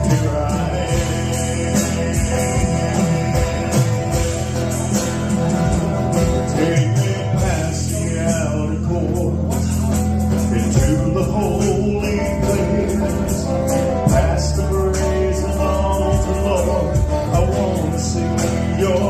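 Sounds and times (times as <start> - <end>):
live band playing gospel song: 0.0 - 19.0.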